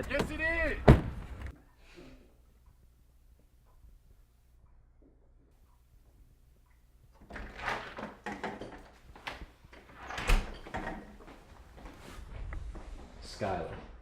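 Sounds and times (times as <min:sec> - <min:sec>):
door knocks and clatters: 0:07.2 - 0:11.2.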